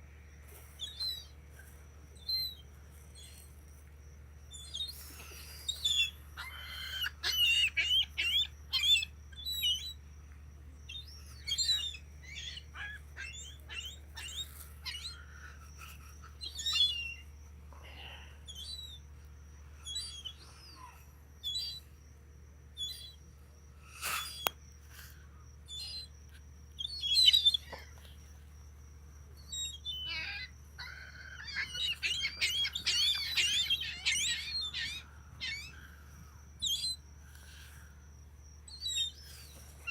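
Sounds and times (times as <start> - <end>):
seagulls squawking: 29.9 - 35.9.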